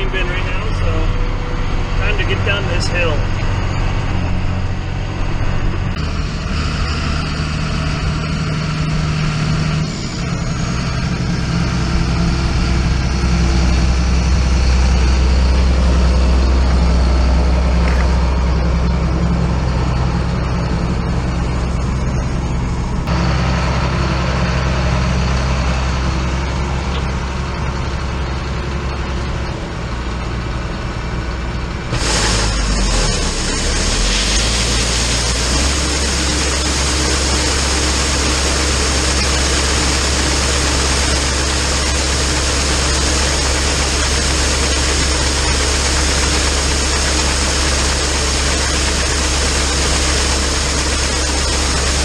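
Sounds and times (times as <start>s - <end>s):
tractor diesel engine running: 0.0s - 52.0s
loud hiss: 31.9s - 45.3s.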